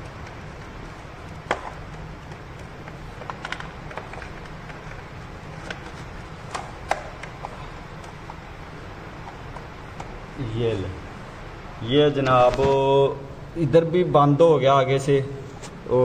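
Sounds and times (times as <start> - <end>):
plastic covers clicking shut: 1.4 - 5.0, 5.6 - 8.4.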